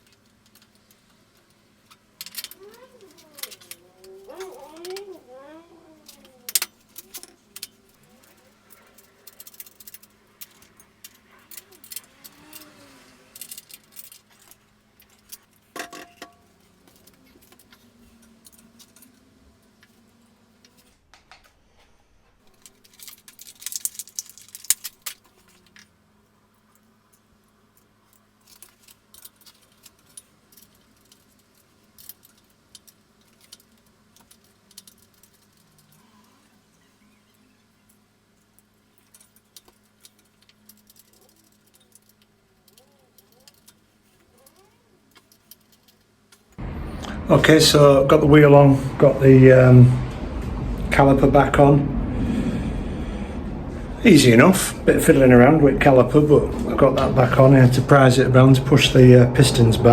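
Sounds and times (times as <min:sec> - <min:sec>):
metal tools clinking and rattling: 0:00.0 - 0:20.9, 0:22.4 - 0:25.9, 0:26.6 - 0:47.1.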